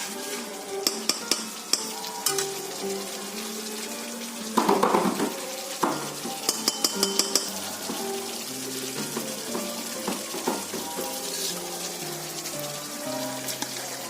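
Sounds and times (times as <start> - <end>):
fish sizzling in a pan: 0.0 - 14.0
spatula knocking against pan: 0.8 - 2.4, 4.6 - 8.0.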